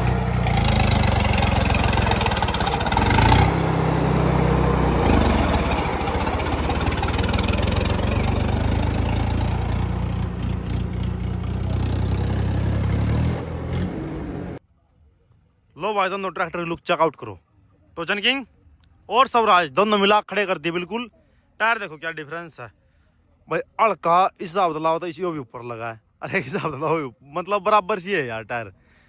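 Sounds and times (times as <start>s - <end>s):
tractor diesel engine running: 0.0s - 14.6s.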